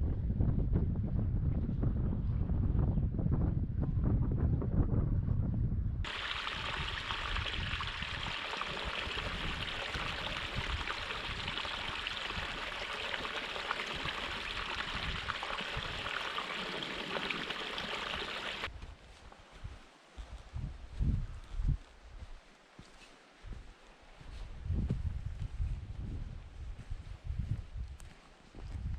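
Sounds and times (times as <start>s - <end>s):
water flowing like a stream: 6.0s - 18.7s.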